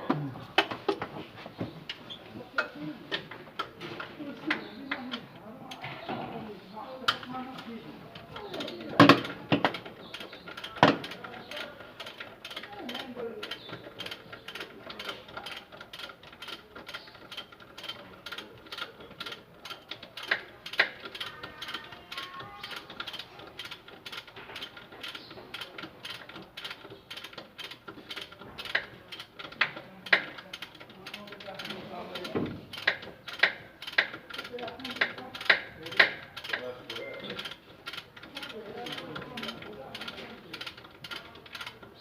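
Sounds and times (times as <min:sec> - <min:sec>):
ratchet wrench clicking: 0:08.5 - 0:41.9.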